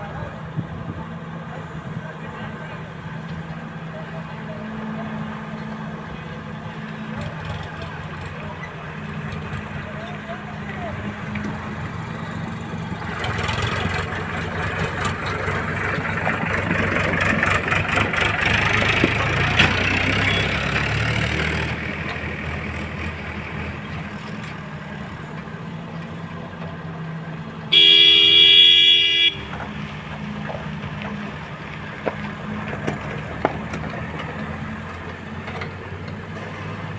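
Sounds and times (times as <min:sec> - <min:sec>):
heavy machinery diesel engine running: 0:00.0 - 0:36.9
vehicle horn: 0:20.0 - 0:20.9, 0:27.7 - 0:29.6.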